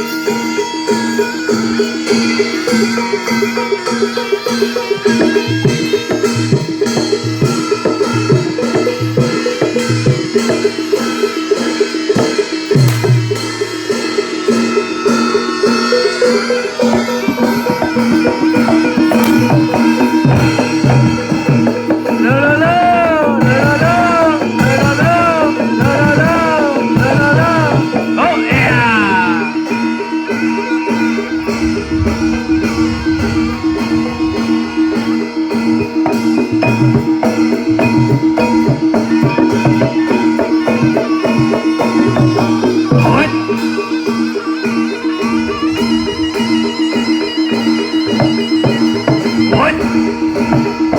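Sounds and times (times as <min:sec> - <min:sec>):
hand drums: 0:00.0 - 0:50.9
ringing metal percussion: 0:00.0 - 0:50.9
wavering melody line: 0:30.3 - 0:36.8
drum strokes: 0:30.3 - 0:40.0.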